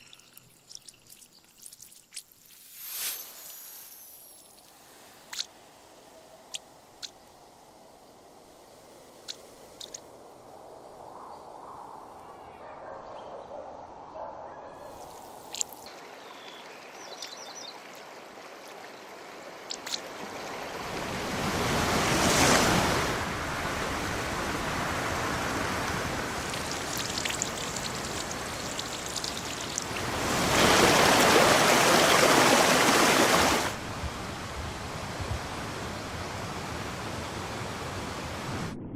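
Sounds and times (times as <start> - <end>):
rushing water: 14.9 - 38.8.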